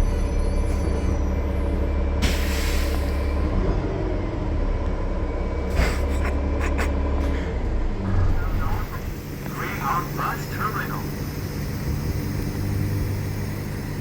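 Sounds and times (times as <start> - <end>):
bus diesel engine rumbling: 0.0 - 14.0
air brake hiss: 2.2 - 3.2.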